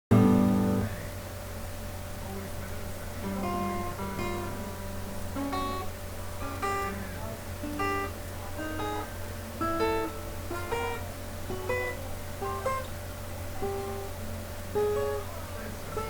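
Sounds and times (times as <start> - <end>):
acoustic guitar plucked notes: 0.1 - 1.1, 3.2 - 7.0, 7.6 - 13.0, 13.6 - 16.0
steady low hum: 0.1 - 16.0.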